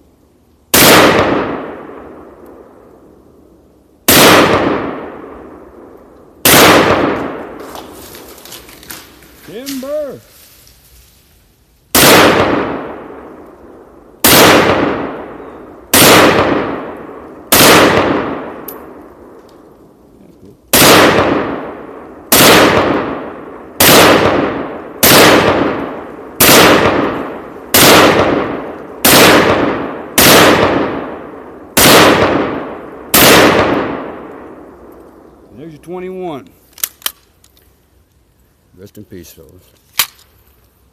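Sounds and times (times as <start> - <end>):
rifle shots ringing out: 0.7 - 2.4, 4.1 - 5.7, 6.4 - 8.0, 11.9 - 13.4, 14.2 - 19.4, 20.7 - 35.3.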